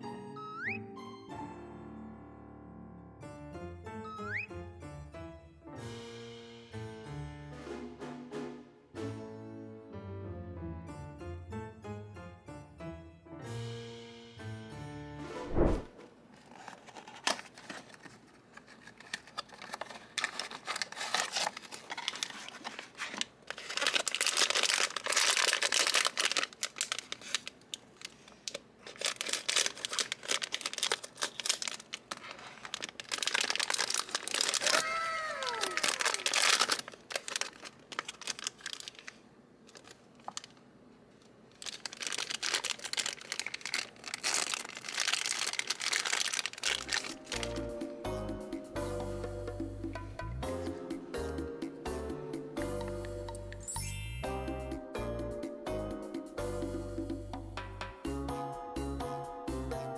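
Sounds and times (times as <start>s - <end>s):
falling-pitch squeak: 0.4s - 0.9s, 4.0s - 4.5s
plastic and foil wrappers rustling: 16.3s - 40.6s, 41.2s - 47.8s.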